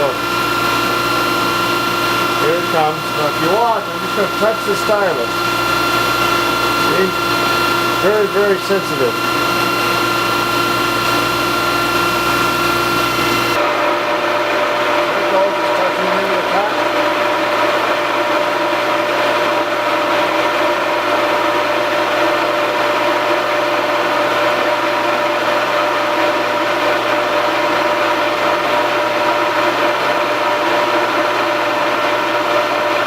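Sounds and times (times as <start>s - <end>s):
hydraulics whining: 0.0s - 13.6s
phase converters humming: 0.0s - 18.6s
metal lathe running: 0.0s - 23.2s.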